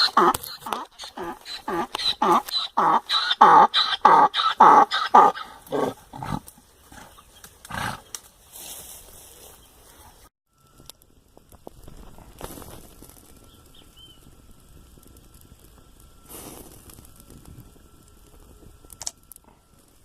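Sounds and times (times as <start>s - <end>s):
chicken cackling: 0.0s - 6.4s.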